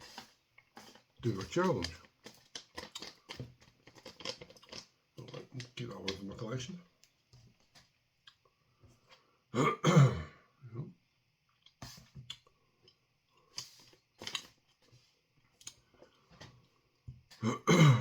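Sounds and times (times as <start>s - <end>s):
man coughing: 9.6s - 10.4s, 17.4s - 18.0s.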